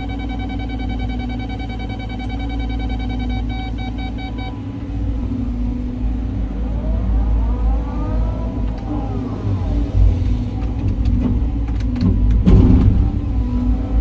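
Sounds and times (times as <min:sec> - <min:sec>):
rapid electronic warning beeper: 0:00.0 - 0:06.1
excavator diesel engine rumble: 0:00.0 - 0:14.0
hydraulic whine: 0:00.0 - 0:14.0.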